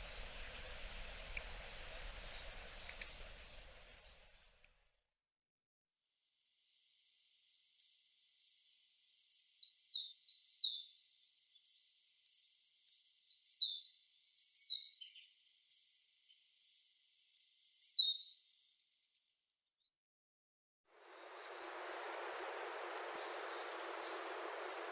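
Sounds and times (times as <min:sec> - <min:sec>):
bird giving sharp call notes: 0:21.4 - 0:24.9.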